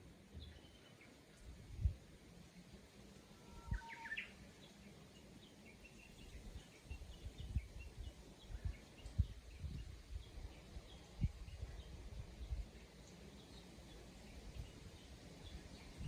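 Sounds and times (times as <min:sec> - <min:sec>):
bird singing: 0:00.4 - 0:01.2, 0:03.4 - 0:11.1.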